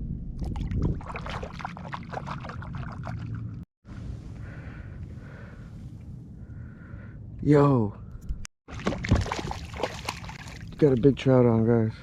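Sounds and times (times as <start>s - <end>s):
water splashing and dripping: 0.4s - 3.6s, 8.7s - 11.2s.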